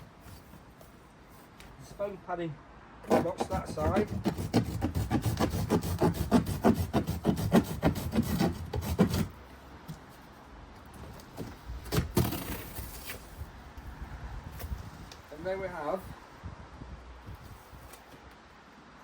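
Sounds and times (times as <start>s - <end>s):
knife sawing through cardboard: 3.0s - 9.4s.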